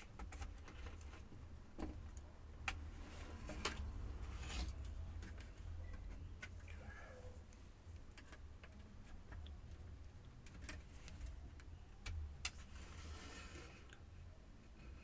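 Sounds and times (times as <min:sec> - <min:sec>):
scraping rustle: 0:12.6 - 0:13.9.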